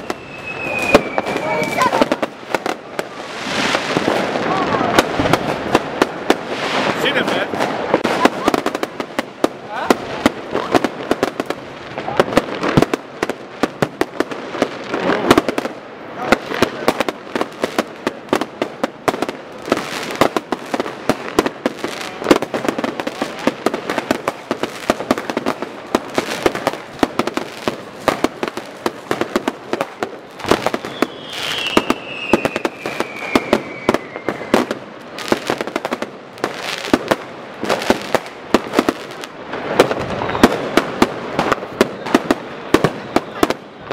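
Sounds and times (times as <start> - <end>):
falling firework whistle: 0.0 - 2.3, 30.4 - 34.8, 39.7 - 40.8
fireworks bangs and crackles: 0.0 - 43.9.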